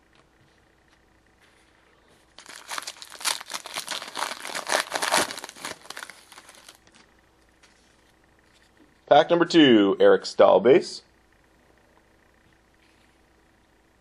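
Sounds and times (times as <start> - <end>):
wrapper crinkling and tearing: 2.4 - 7.0.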